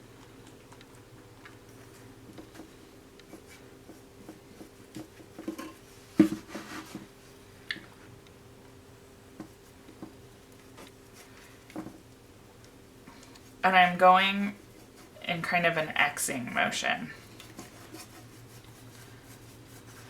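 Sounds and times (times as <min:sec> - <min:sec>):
faint steady hum: 0:00.0 - 0:20.0
paintbrush tapping and scraping: 0:00.2 - 0:07.1, 0:09.3 - 0:13.6, 0:17.2 - 0:20.0.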